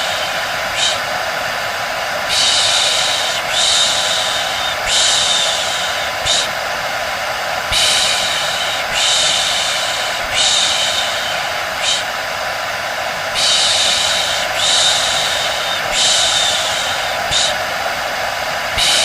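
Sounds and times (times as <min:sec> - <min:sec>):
hair dryer running: 0:00.0 - 0:19.0.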